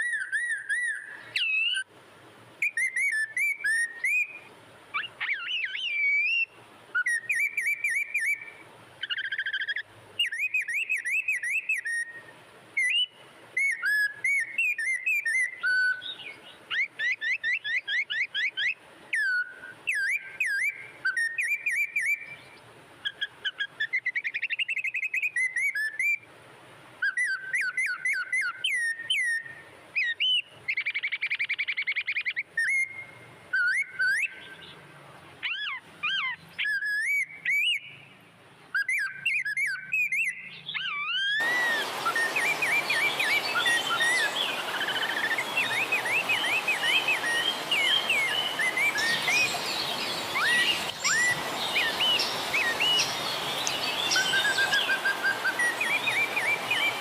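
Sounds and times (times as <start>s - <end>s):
chorus of bird calls: 0.0s - 1.9s, 2.6s - 12.2s, 12.8s - 26.2s, 27.0s - 34.8s, 35.4s - 38.0s, 38.7s - 57.0s
songbirds whistling calls: 0.0s - 1.9s, 2.6s - 26.3s, 27.0s - 34.8s, 35.4s - 57.0s
buzzy bird trill: 38.8s - 57.0s
steady hiss: 41.4s - 57.0s.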